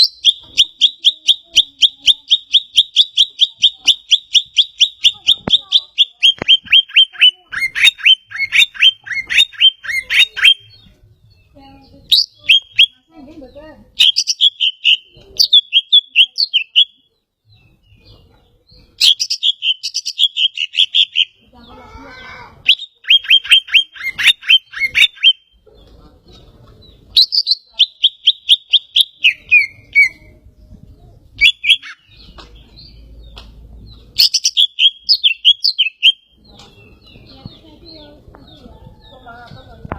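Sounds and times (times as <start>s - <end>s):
bird singing rapid high chirps: 0.0s - 39.9s.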